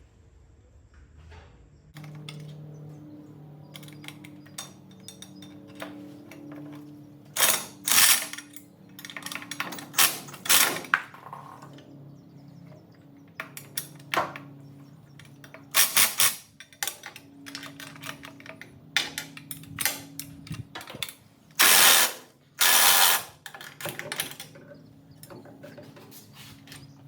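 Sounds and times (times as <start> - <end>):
tool clicks and clatters: 2.0 - 3.0, 3.6 - 27.0
ratchet wrench clicking: 15.6 - 16.8, 21.5 - 23.5.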